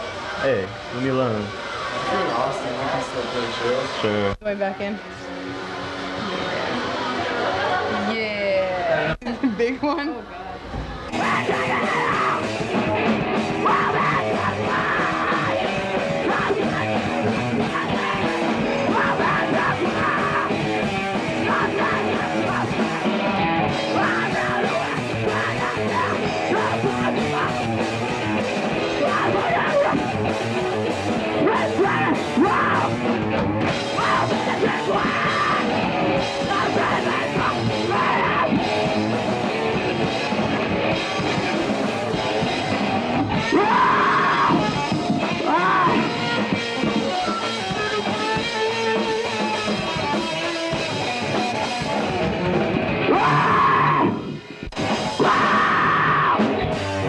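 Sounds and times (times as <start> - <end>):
drums: 0.0 - 57.0
electric guitar: 10.2 - 57.0
shouted vocals: 11.1 - 30.4, 31.2 - 33.2, 33.8 - 38.9, 43.3 - 48.5, 53.0 - 54.4, 55.0 - 56.7.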